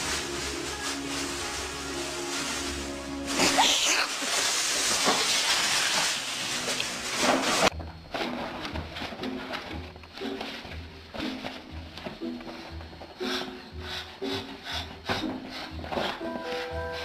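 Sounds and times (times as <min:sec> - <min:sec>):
background music: 0:00.0 - 0:04.0, 0:06.0 - 0:17.0
loud hissing noise: 0:00.0 - 0:07.7.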